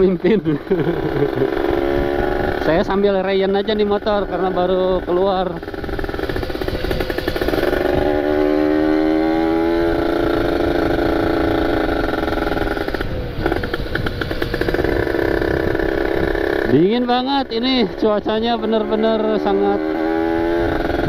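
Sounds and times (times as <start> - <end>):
two-stroke motorcycle engine: 0.0 - 21.0.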